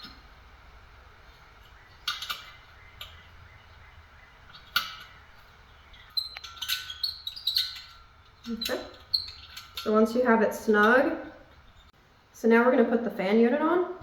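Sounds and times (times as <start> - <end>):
hand tool clicks and squeaks: 1.6 - 3.3, 4.4 - 12.0.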